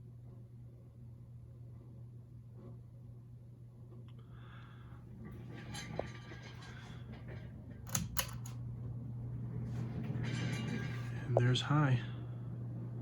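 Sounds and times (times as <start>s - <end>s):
ceiling fan motor hum: 0.0s - 13.0s.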